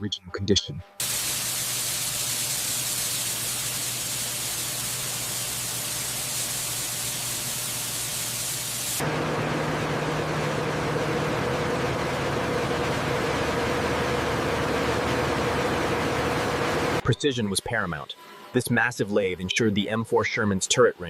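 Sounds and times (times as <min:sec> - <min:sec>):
machine hum with held tones: 0:00.8 - 0:19.7
electrolysis bath fizzing: 0:01.0 - 0:09.0.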